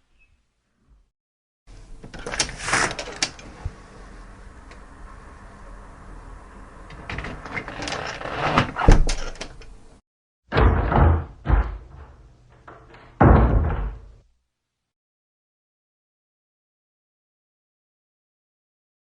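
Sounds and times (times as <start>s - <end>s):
door shutting: 2.0s - 3.8s, 6.8s - 9.8s, 10.5s - 14.2s
door handle and latch rattling: 7.0s - 9.8s
heavy door thuds: 8.3s - 9.3s, 10.5s - 14.2s.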